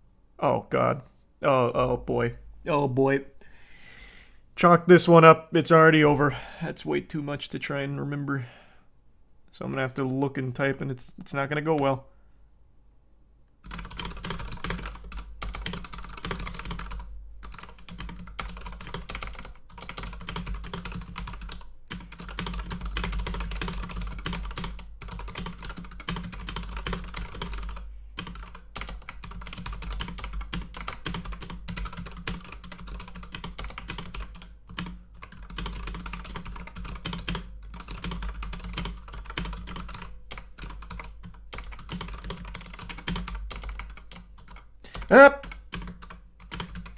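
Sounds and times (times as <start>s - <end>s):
typing on a keyboard: 13.6s - 46.9s.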